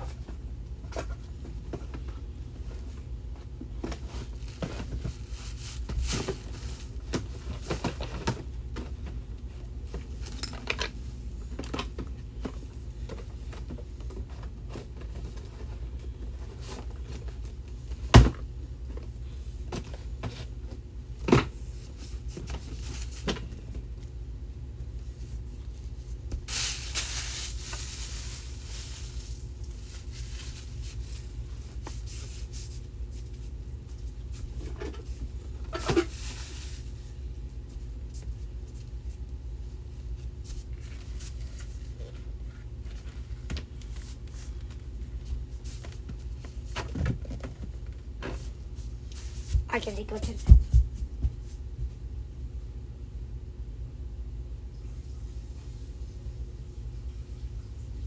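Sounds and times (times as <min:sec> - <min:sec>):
rustling: 0:03.9 - 0:08.2, 0:25.2 - 0:39.2.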